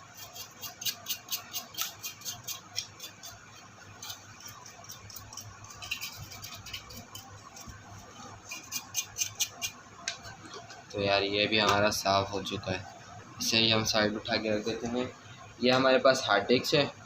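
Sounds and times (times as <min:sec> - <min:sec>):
brush scrubbing heatsink: 0:00.0 - 0:09.8.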